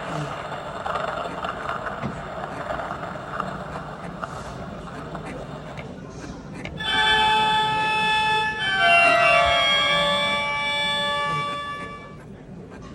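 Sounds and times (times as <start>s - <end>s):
electronic toy tune: 6.8s - 12.2s.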